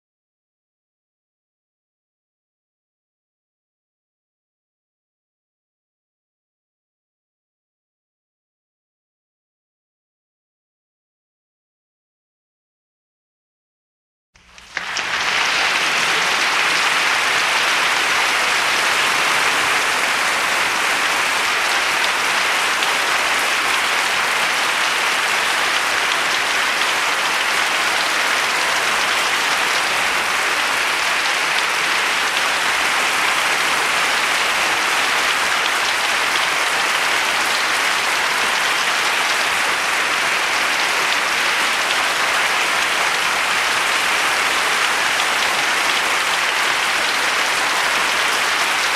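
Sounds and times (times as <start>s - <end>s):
crowd applauding: 14.4s - 48.9s.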